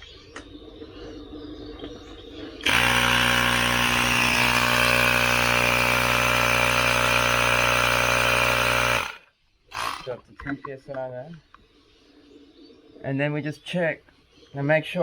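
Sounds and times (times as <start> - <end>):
electric air compressor running: 2.6 - 10.2.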